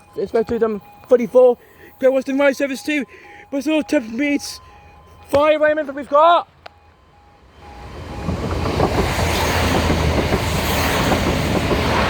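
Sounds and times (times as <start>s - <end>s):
train wheels rumbling on rails: 7.5s - 12.0s.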